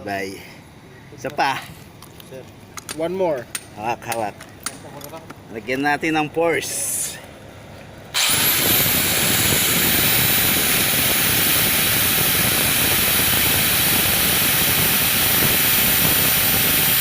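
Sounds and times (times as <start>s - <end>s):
rotary hammer drill running: 8.2s - 17.0s.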